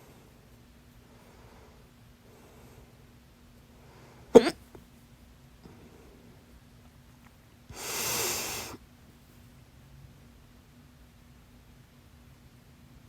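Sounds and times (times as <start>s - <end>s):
person breathing: 1.1s - 3.0s, 7.7s - 8.8s
loud sharp hiccup: 4.4s - 4.7s.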